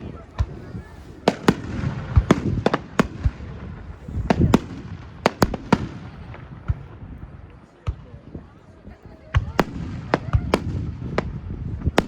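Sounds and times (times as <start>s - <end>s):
fireworks banging: 0.0s - 7.0s, 9.4s - 12.0s.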